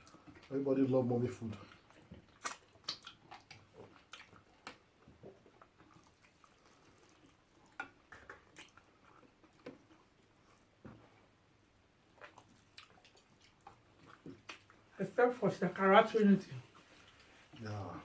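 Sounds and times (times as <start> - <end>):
wet chewing and lip smacks: 0.0 - 0.5, 1.5 - 10.8, 12.1 - 14.9.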